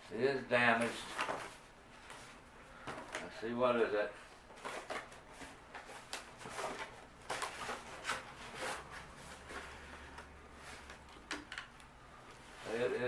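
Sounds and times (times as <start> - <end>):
cardboard rustling and scraping: 4.6 - 10.0, 10.6 - 11.1.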